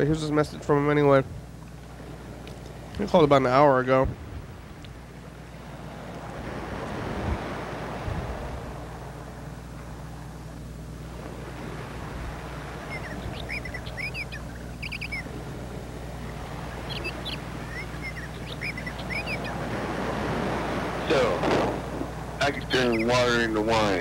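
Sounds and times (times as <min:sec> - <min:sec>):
steady hiss and low hum: 0:00.0 - 0:24.0
small birds chirping: 0:12.7 - 0:19.7, 0:22.4 - 0:24.0.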